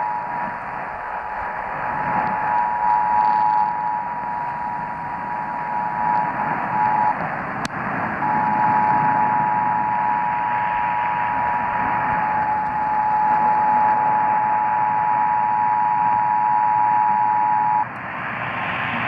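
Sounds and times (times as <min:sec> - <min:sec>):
radio static hiss: 0:00.0 - 0:19.0
two-tone attention signal: 0:02.2 - 0:07.2, 0:08.2 - 0:17.8.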